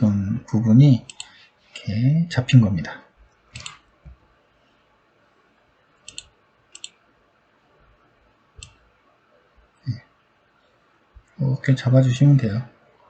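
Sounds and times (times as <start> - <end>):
computer mouse clicks: 1.1 - 1.3, 3.5 - 4.2, 6.0 - 7.0, 8.6 - 8.8.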